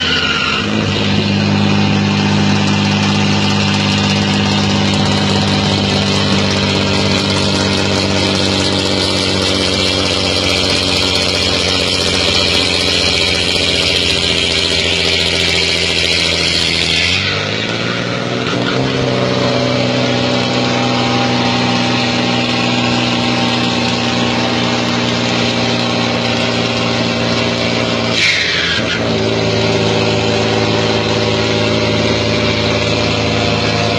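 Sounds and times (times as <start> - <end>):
diesel truck engine drone: 0.0 - 33.9
turbo whistle: 28.0 - 29.1.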